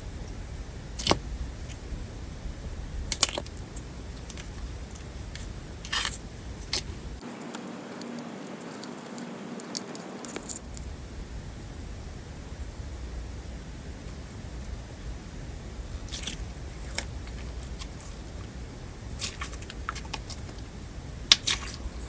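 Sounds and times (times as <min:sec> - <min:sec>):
slime popping and crackling: 0:16.0 - 0:18.5, 0:21.3 - 0:22.0.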